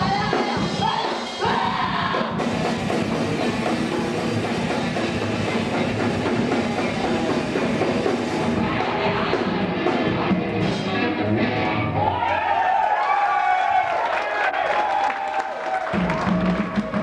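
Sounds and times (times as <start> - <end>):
rock band playing: 0.0 - 12.2, 15.8 - 17.0.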